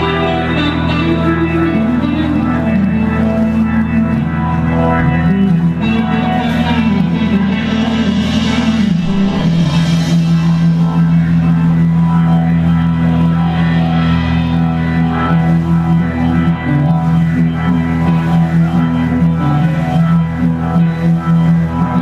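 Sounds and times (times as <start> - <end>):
live blues-rock band playing: 0.0 - 22.0
drum strokes: 5.0 - 14.6.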